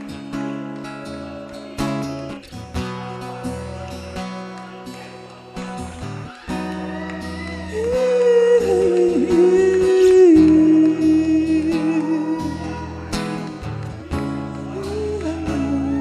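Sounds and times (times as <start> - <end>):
person singing long notes: 7.1 - 13.2, 14.6 - 16.0.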